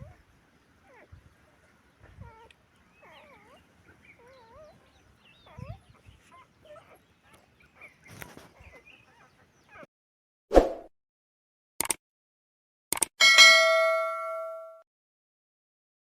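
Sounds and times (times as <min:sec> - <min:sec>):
puppies whimpering and squeaking: 0:00.0 - 0:00.2, 0:00.8 - 0:09.9.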